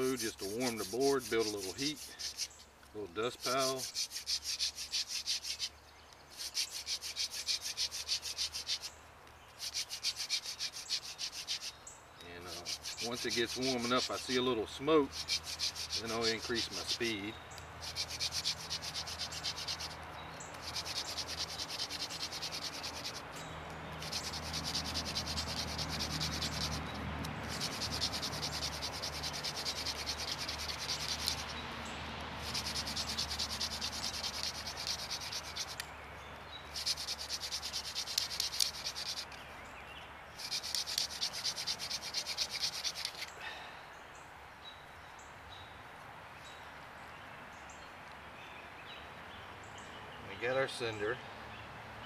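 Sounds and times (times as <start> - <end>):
hand drill rasping on wood: 0.0 - 2.6, 3.2 - 9.0, 9.6 - 23.4, 24.0 - 31.6, 32.4 - 35.9, 36.7 - 39.4, 40.4 - 43.4.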